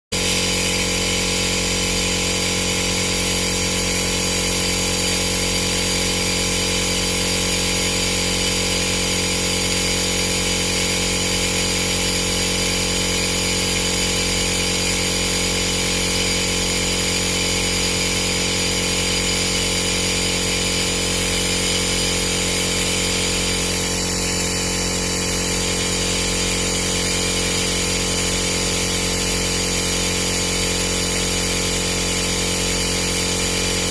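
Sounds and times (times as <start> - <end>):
small motor humming: 0.2 - 33.9.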